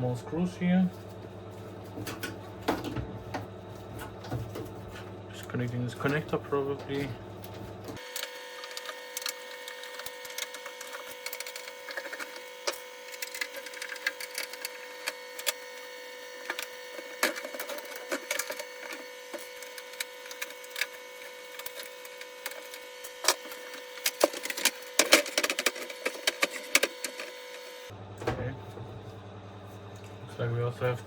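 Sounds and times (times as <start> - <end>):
plastic and metal parts clattering: 6.0 - 27.6.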